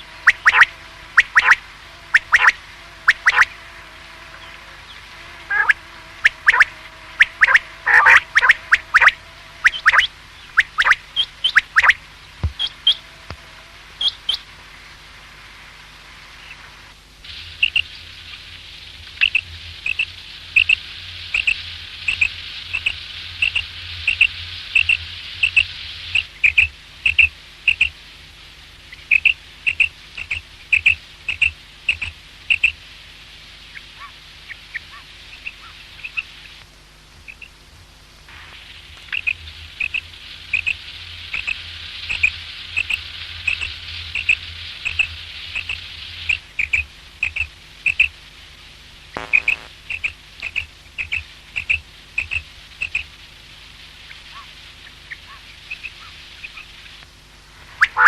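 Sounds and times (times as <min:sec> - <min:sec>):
quail calling: 0:00.0 - 0:03.6, 0:05.4 - 0:13.4, 0:33.8 - 0:36.3, 0:54.1 - 0:56.7, 0:57.8 - 0:58.0
low steady hum: 0:00.0 - 0:58.0
hiss: 0:12.5 - 0:37.3, 0:38.2 - 0:58.0.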